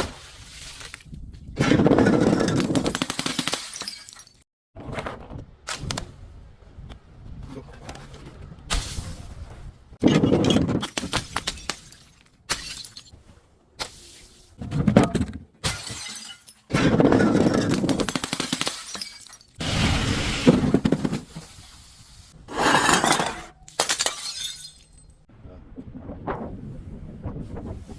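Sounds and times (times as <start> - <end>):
glass bottles shattering: 2.0 - 4.4, 10.1 - 13.1, 15.6 - 19.6, 22.6 - 25.2.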